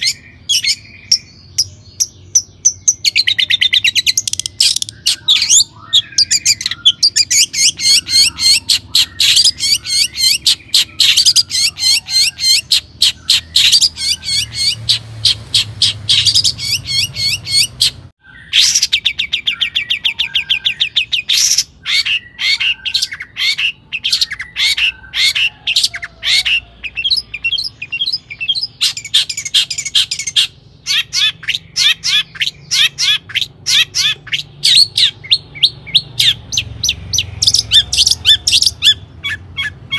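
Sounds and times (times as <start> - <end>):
shrike singing: 0.0 - 39.9.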